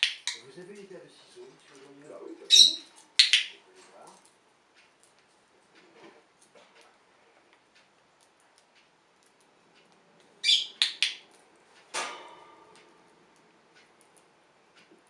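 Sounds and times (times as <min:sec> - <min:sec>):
lovebird chirp: 0:00.0 - 0:00.5, 0:02.4 - 0:03.6, 0:10.4 - 0:11.3.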